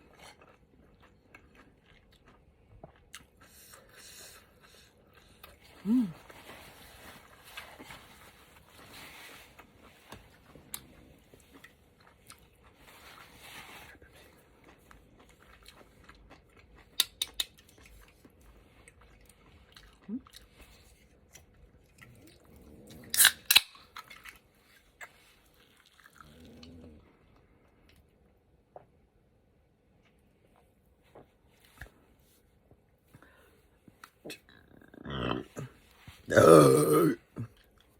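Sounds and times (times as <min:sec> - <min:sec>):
chewing and eating: 0:00.0 - 0:29.0, 0:37.2 - 0:37.9.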